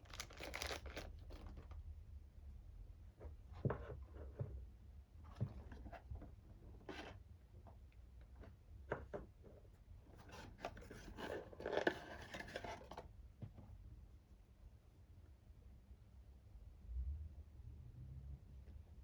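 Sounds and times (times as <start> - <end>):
packaging scraping: 0.0 - 1.1
packaging crinkling and rustling: 0.0 - 1.7.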